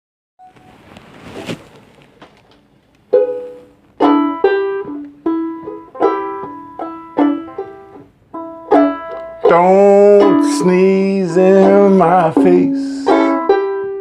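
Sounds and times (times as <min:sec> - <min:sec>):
banjolele strumming chords: 0:03.1 - 0:14.0.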